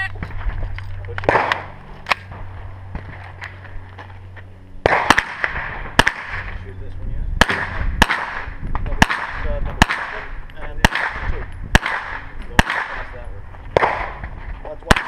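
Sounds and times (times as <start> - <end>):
carbine gunshots: 1.2 - 3.5, 4.8 - 6.6, 7.4 - 15.0.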